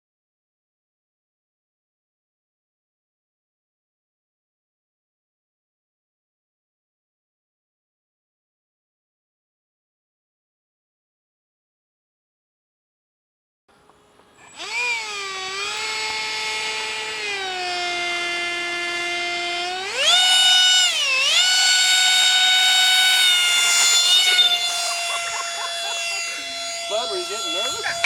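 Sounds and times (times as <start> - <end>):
model airplane motor whine: 13.7 - 28.0.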